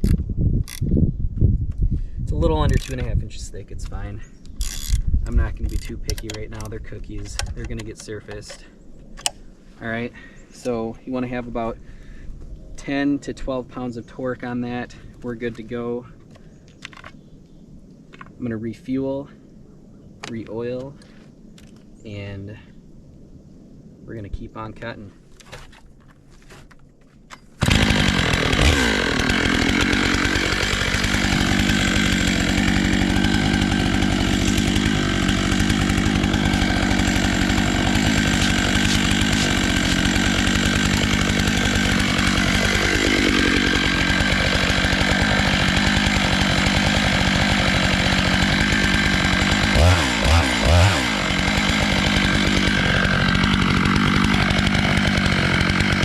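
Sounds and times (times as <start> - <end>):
chainsaw cutting a log: 4.6 - 8.6, 27.6 - 56.0.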